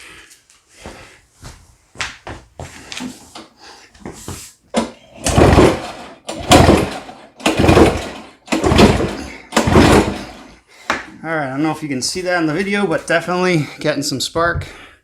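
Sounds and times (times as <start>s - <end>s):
recoil starter pulls: 4.7s - 10.6s
engine spinning over: 5.0s - 10.5s.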